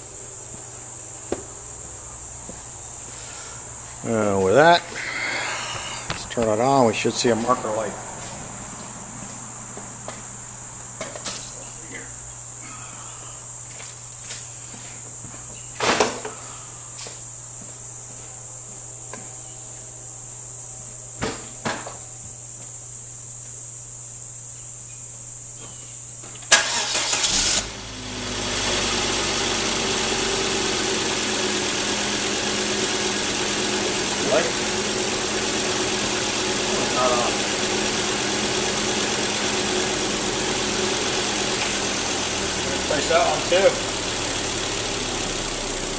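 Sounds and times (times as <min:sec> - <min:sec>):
car engine cranking and idling: 0:26.5 - 0:45.9.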